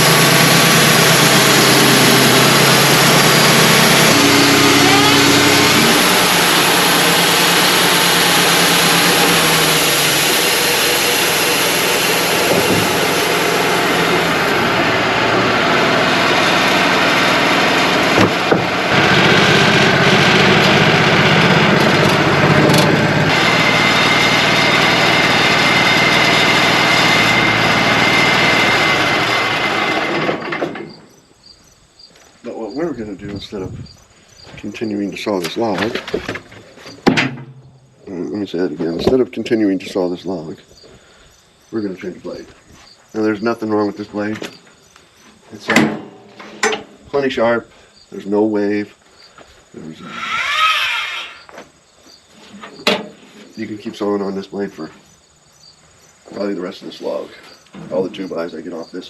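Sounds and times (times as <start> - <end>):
sawmill sawing log: 0.0 - 31.0.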